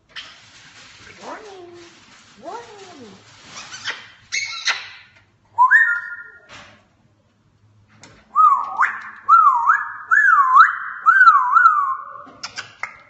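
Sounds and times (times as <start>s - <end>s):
parrot whistling: 5.6s - 6.5s, 8.4s - 12.2s.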